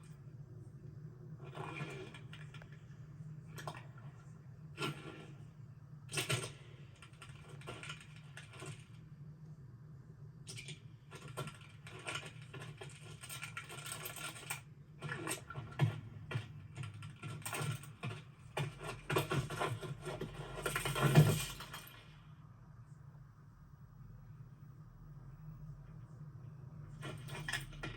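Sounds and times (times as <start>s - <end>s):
low steady hum: 0.0s - 27.9s
dry clicking and scratching: 1.4s - 9.0s, 10.5s - 21.4s.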